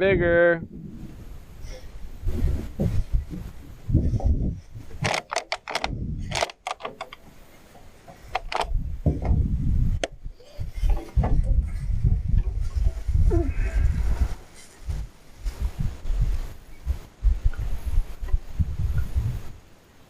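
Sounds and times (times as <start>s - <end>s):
low microphone rumble: 0.0s - 5.1s, 8.6s - 19.7s
sharp clicks and rattles: 2.8s - 13.0s.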